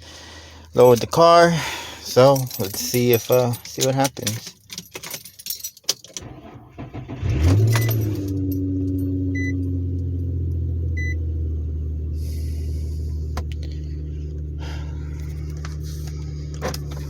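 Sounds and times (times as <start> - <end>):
car engine cranking and idling: 0.3 - 17.0
keys jangling: 2.1 - 6.3, 7.5 - 10.0
short electronic beeps: 9.3 - 9.6.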